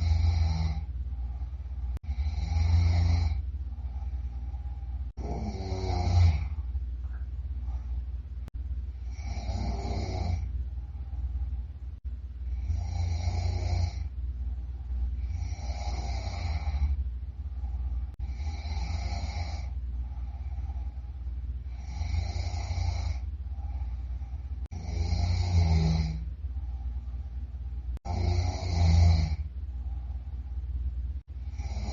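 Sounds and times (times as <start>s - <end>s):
person snoring loudly: 0.0s - 0.9s, 2.0s - 3.4s, 5.1s - 6.6s, 9.0s - 10.5s, 12.5s - 14.1s, 15.2s - 17.0s, 18.2s - 19.8s, 21.7s - 23.9s, 24.6s - 26.3s, 28.0s - 29.4s, 31.4s - 31.9s
steady low hum: 0.0s - 31.9s.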